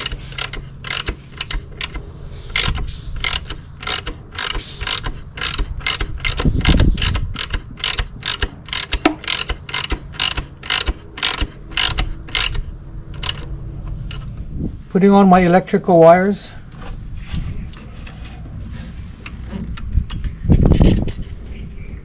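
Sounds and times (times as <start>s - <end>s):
hand ratchet clicking: 0.0s - 13.5s.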